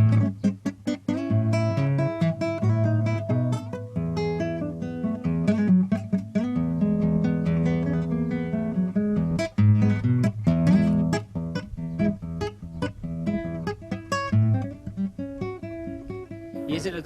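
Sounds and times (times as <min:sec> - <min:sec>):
acoustic guitar plucked and strummed: 0:00.0 - 0:17.0.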